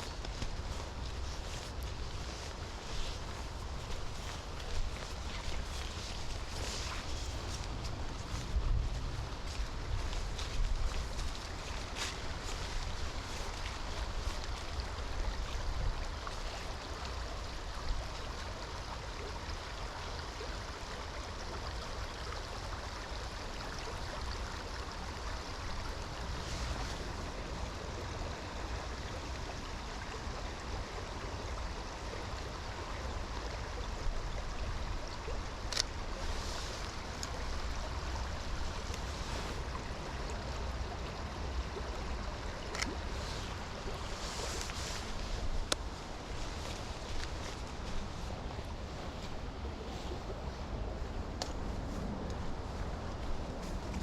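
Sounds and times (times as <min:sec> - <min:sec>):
wind rumble on microphone: 0:00.0 - 0:21.8, 0:22.9 - 0:54.0
river flowing: 0:00.0 - 0:54.0.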